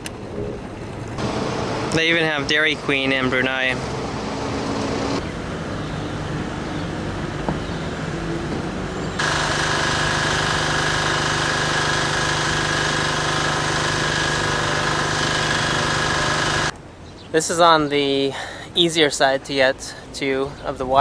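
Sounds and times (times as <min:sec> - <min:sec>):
motor hum: 0:01.2 - 0:05.5, 0:08.4 - 0:16.7.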